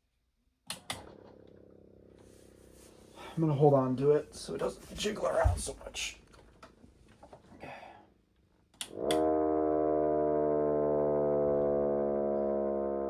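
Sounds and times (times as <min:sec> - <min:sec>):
switch clicks: 0:00.7 - 0:01.0
siren wailing: 0:08.9 - 0:13.0.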